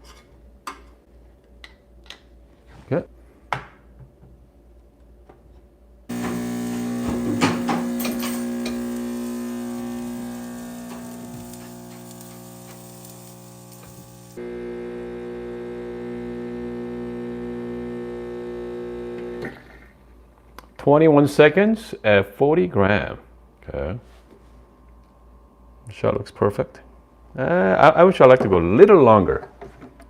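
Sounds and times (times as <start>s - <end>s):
espresso machine pump humming: 6.1s - 19.7s.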